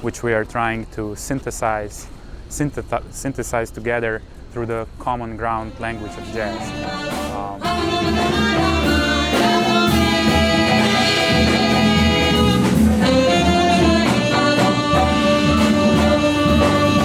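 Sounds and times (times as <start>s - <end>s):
jazz band music: 4.8s - 17.0s.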